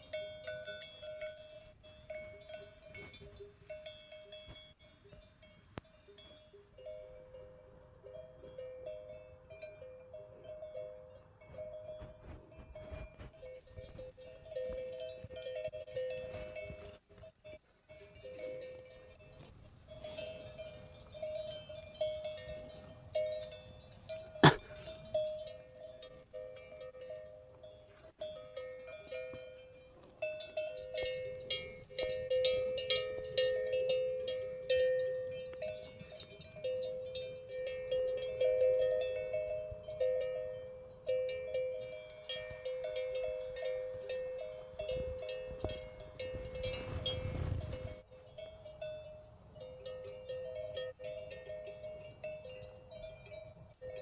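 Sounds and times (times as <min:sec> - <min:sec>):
metal bells clanking: 0:00.0 - 0:54.0.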